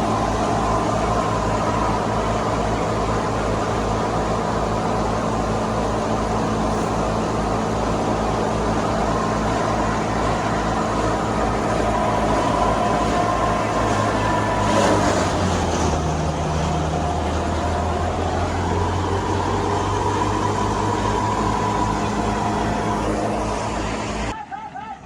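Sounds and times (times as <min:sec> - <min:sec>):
threshing machinery hum: 0:00.0 - 0:24.4
tractor diesel engine running: 0:00.0 - 0:24.4.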